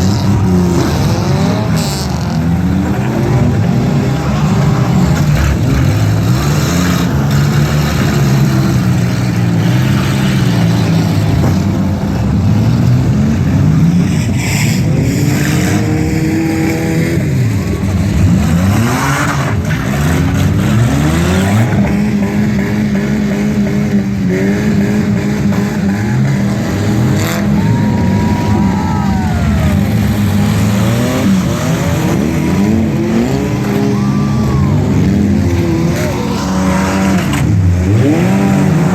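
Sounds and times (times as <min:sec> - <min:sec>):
car engines revving: 0:00.0 - 0:38.9.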